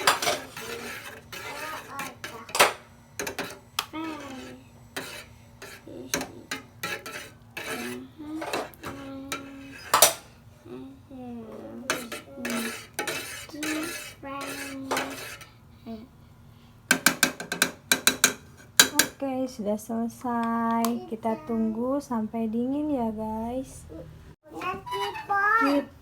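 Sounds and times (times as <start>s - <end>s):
spoon clinking and scraping pot: 0.0s - 10.3s, 11.9s - 15.6s, 16.9s - 19.2s, 24.6s - 26.0s.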